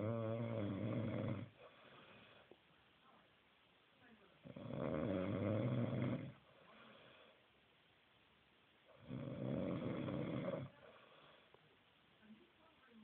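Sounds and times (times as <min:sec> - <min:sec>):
man snoring: 0:00.0 - 0:01.5, 0:04.5 - 0:06.4, 0:09.0 - 0:10.7.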